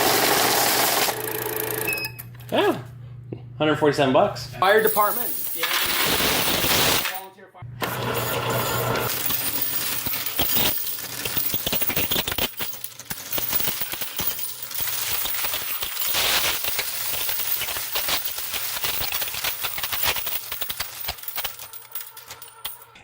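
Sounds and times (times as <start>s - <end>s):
coins clinking and rattling: 4.6s - 7.3s, 7.9s - 23.0s.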